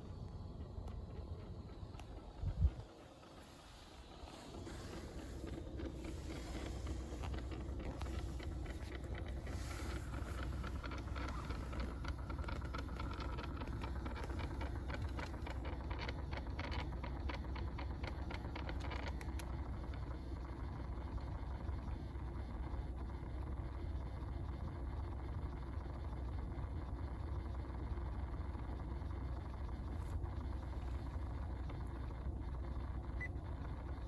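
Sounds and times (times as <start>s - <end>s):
air conditioner clicking and rattling: 0.0s - 20.1s
steady low hum: 0.0s - 34.0s.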